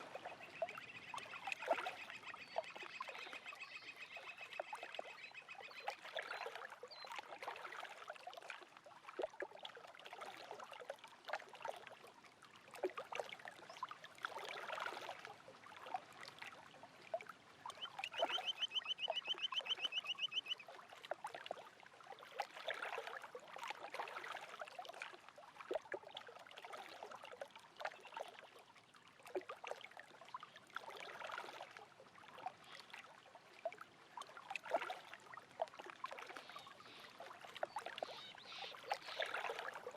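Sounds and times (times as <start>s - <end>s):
lake waves lapping: 0.0s - 39.9s
bird trilling: 17.8s - 20.6s.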